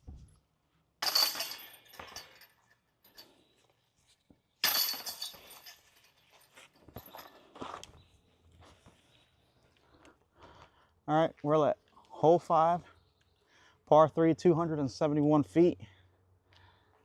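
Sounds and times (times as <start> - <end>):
disc golf chains jingling: 1.0 - 3.5, 4.6 - 7.8.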